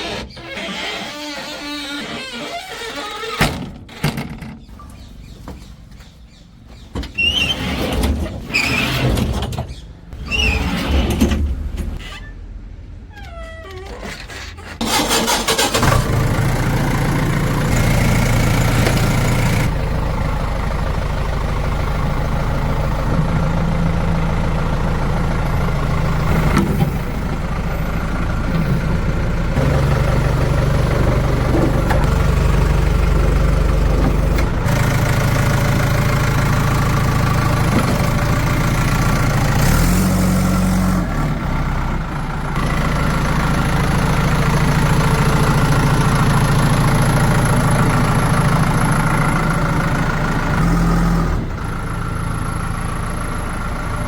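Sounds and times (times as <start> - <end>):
heavy diesel engine running: 14.8 - 54.0.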